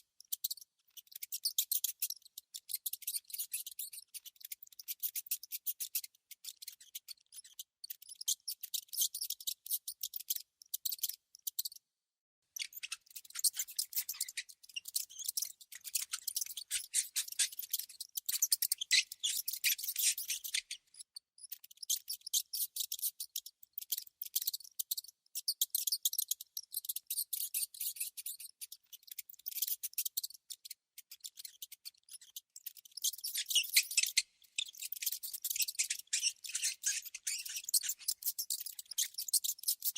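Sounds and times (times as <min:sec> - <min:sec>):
rodent scratching and clicking: 0:12.6 - 0:23.2, 0:25.6 - 0:39.9.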